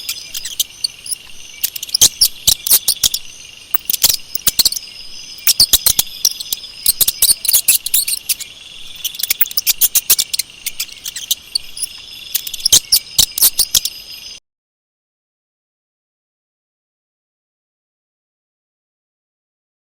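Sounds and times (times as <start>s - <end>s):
mouse squeaking: 0.0s - 14.3s.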